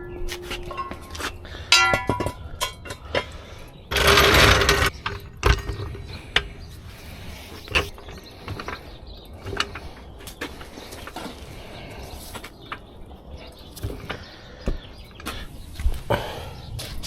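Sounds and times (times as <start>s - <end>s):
metal clank ringing: 0.0s - 6.0s
metal scraping rush: 0.0s - 6.4s.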